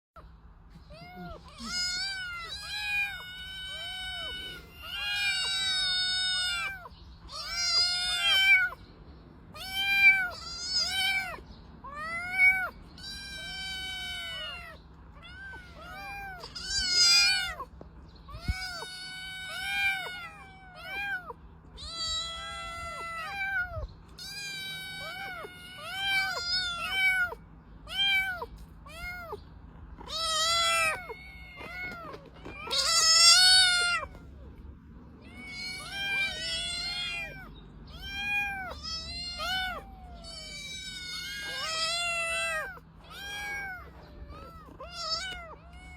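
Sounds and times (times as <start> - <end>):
cat meowing: 0.9 - 8.8, 9.5 - 29.4, 30.0 - 34.5, 35.2 - 45.9.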